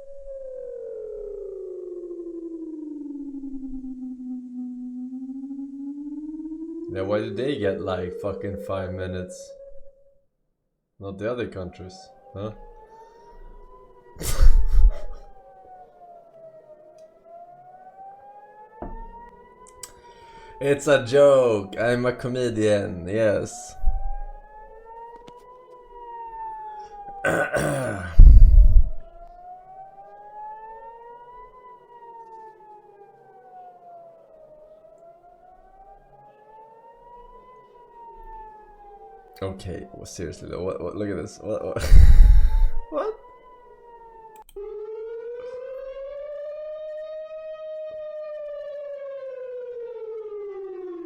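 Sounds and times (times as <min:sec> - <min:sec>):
warning siren wailing: 0:00.0 - 0:10.2, 0:11.1 - 0:51.0
faint lower tone: 0:23.7 - 0:24.5, 0:28.2 - 0:29.2
brief loud burst of noise: 0:28.2 - 0:29.0, 0:41.8 - 0:42.8.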